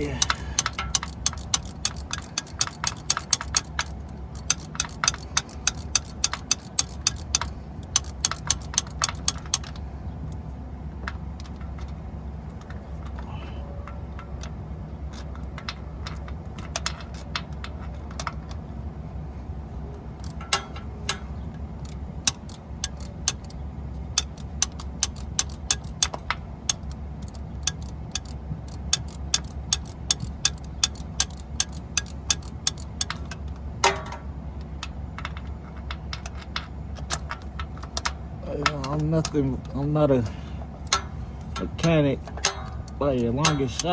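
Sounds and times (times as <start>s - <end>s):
ratchet wrench clicking: 0.0s - 9.8s, 20.2s - 33.4s, 40.8s - 43.9s.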